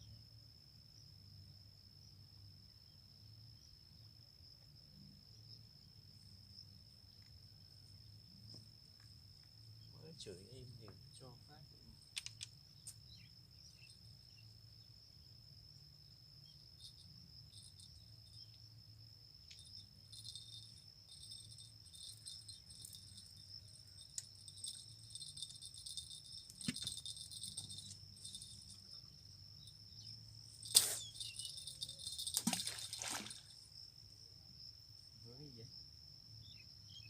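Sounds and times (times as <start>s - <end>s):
insects chirring: 0.0s - 37.0s
sharp clicks: 12.1s - 12.5s.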